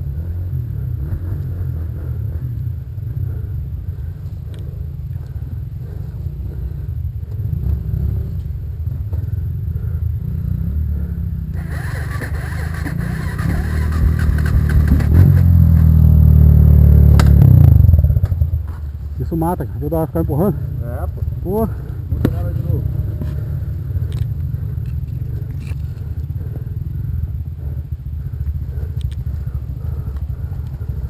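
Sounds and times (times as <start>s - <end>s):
brighter louder engine layer: 0.0s - 31.0s
off-road vehicle engine rumbling: 0.0s - 31.0s.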